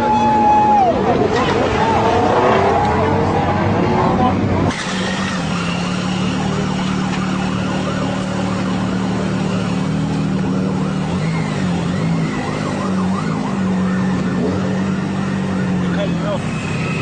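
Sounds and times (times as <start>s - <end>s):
vehicles droning: 0.0s - 17.0s
police siren: 4.8s - 17.0s.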